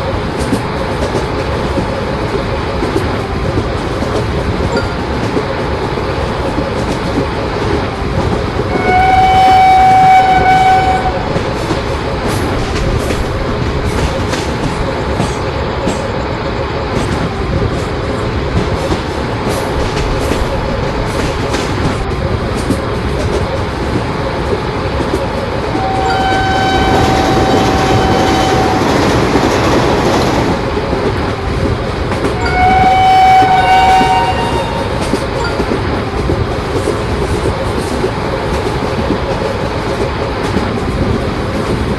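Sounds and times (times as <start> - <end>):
train wheels rumbling on rails: 0.0 - 41.9
train horn blasts: 8.7 - 11.4, 25.7 - 29.0, 32.4 - 35.0.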